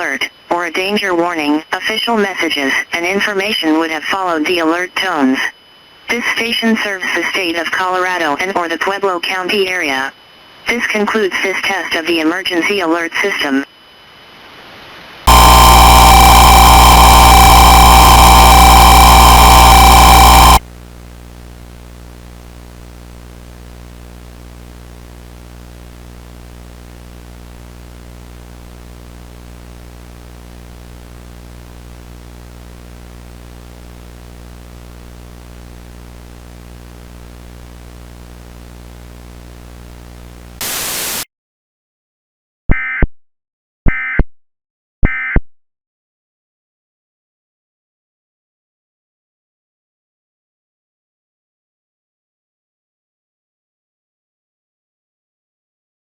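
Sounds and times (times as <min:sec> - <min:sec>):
steady tones: 0:15.3 - 0:20.6
buzzing hum: 0:15.3 - 0:41.2
harsh static: 0:15.3 - 0:41.3.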